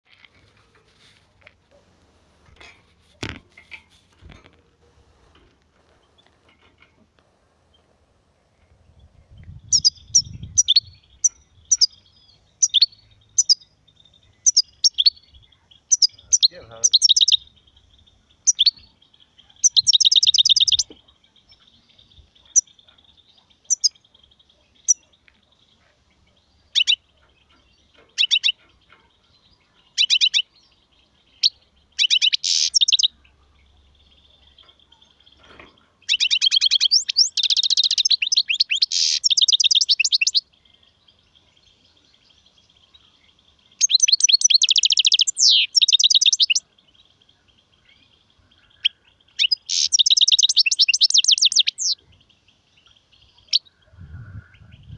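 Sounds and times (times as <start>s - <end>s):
goldfinch twittering trills: 15.9s - 24.0s, 43.7s - 46.7s, 48.8s - 52.0s.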